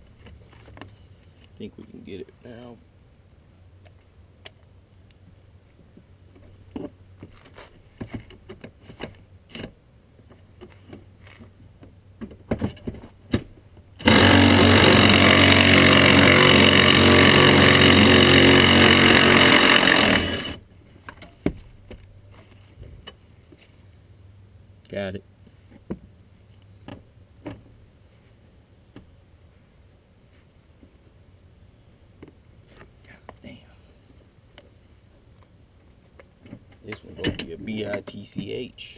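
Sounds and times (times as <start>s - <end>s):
impact wrench hammering: 14.0s - 20.6s.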